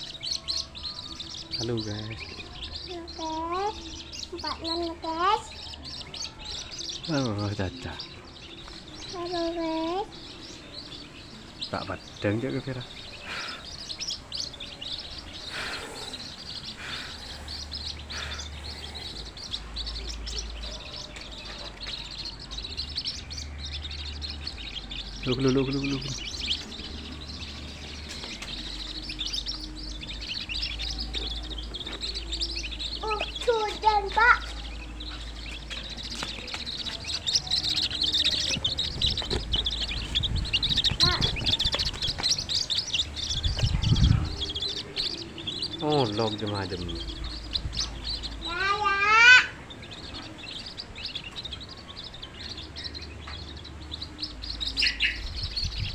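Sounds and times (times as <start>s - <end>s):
small birds chirping: 0.0s - 55.9s.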